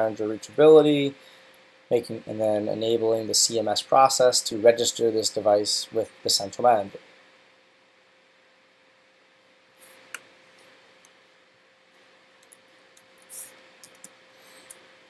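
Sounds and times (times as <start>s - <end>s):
steady low hum: 0.0s - 15.0s
computer mouse clicks: 13.8s - 14.8s.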